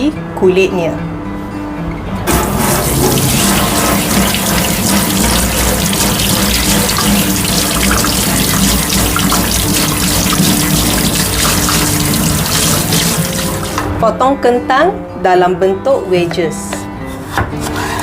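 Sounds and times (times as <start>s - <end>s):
sponge scrubbing potatoes: 2.3s - 13.8s
tap running into sink: 2.3s - 14.0s.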